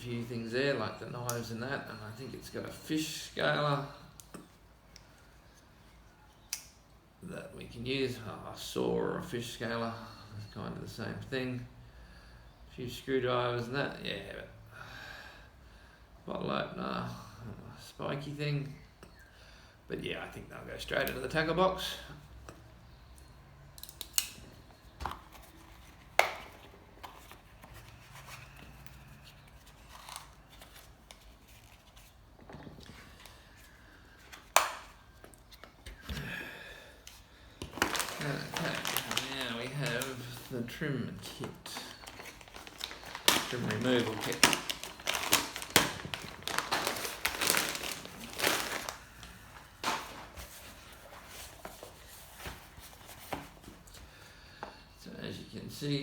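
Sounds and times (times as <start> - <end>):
packaging rustling: 25.1 - 35.8, 37.1 - 54.0.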